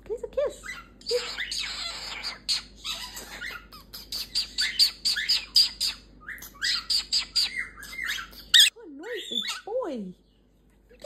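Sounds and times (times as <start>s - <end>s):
cockatoo screeching calls: 0.6s - 8.7s.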